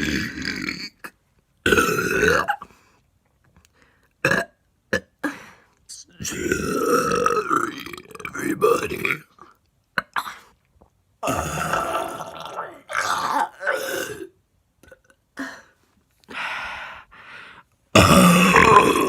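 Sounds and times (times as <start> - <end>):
woman burping: 11.2 - 15.8, 18.0 - 19.0.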